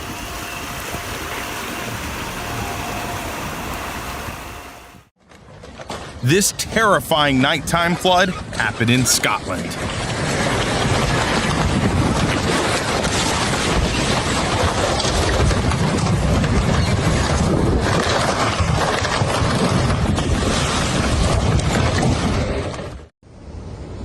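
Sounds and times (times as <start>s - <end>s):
floodwater rushing: 0.0s - 5.1s, 6.2s - 15.4s.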